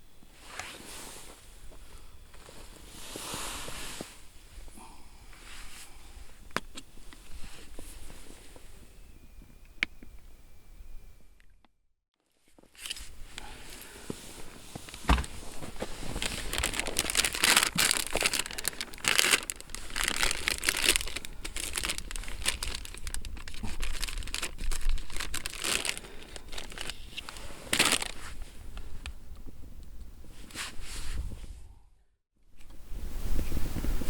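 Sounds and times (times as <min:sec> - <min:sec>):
plastic packaging crinkling: 0:14.8 - 0:28.2.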